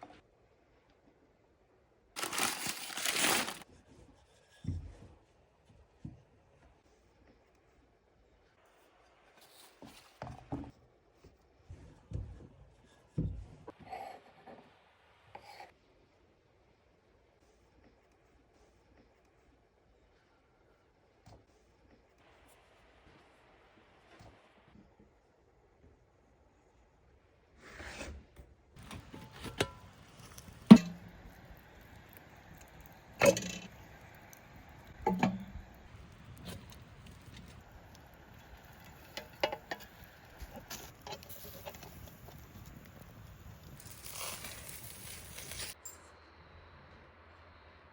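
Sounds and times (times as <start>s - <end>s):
rustle: 28.8s - 46.0s
soft scrapes and rubs: 43.6s - 45.8s.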